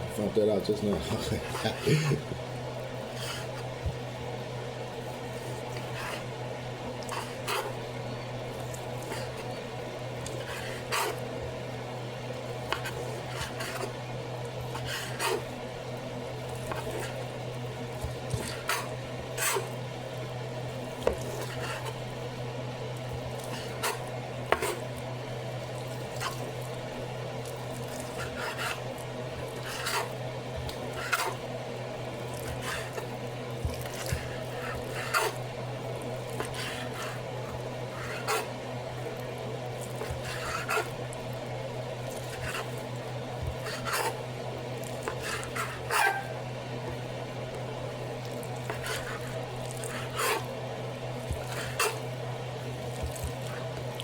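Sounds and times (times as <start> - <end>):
knife cutting on cutting board: 23.4 - 24.8, 27.9 - 28.9, 30.8 - 31.4, 33.7 - 35.4, 36.4 - 37.2, 45.0 - 46.4.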